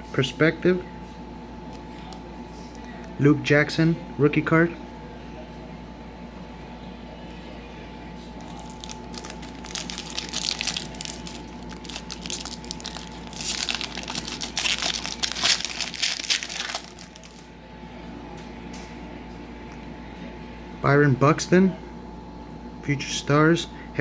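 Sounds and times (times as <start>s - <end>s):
foil wrapper tearing and crinkling: 8.4s - 17.5s.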